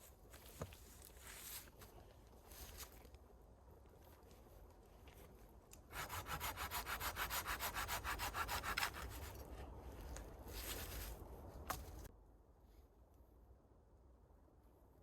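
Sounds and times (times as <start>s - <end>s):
hand saw cutting wood: 5.9s - 9.4s.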